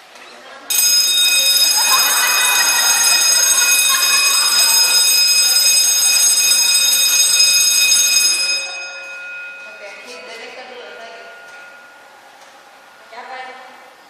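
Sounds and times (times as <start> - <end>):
fire alarm buzzer shrill tone: 0.7 - 9.2.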